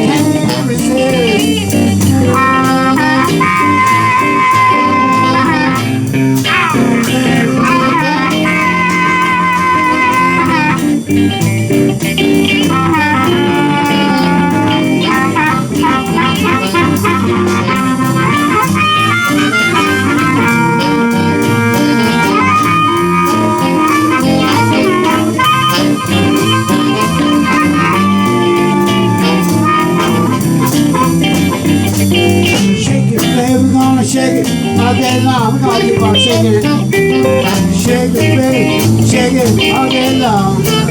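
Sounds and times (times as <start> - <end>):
blues band playing: 0.0 - 40.9
blues harmonica bending notes: 0.0 - 40.9.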